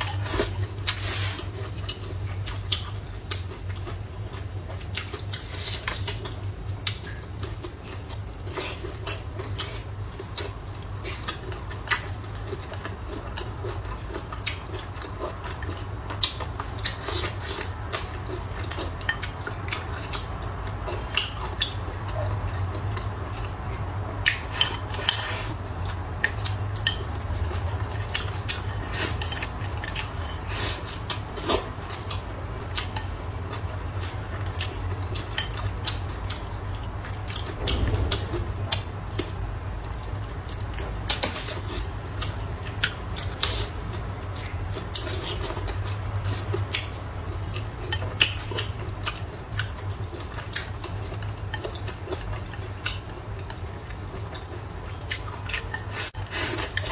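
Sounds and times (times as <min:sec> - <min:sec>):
steady low hum: 0:31.0 - 0:47.6.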